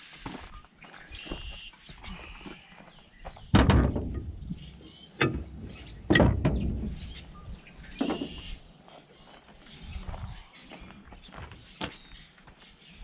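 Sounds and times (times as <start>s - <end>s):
heavy metal knocks: 3.5s - 7.3s.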